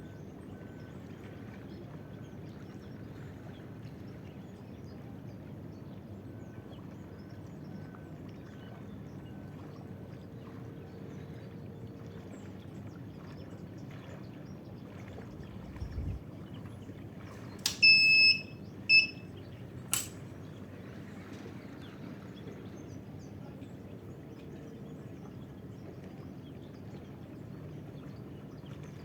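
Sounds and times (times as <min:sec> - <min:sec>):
electronic buzzer beeping: 0:17.6 - 0:19.2
sharp click: 0:17.6 - 0:19.2, 0:19.9 - 0:20.2.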